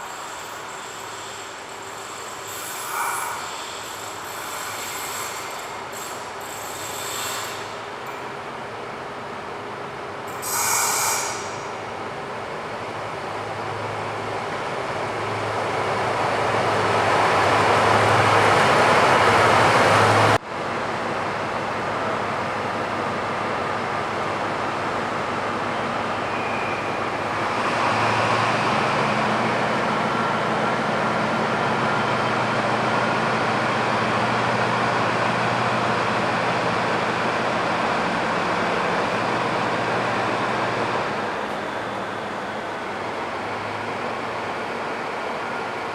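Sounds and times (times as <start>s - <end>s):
short high burst: 10.4s - 11.8s.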